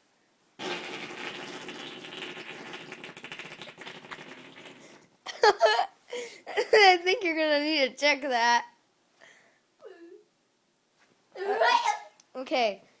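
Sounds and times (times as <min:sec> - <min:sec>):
long noisy fart: 0:00.6 - 0:05.1.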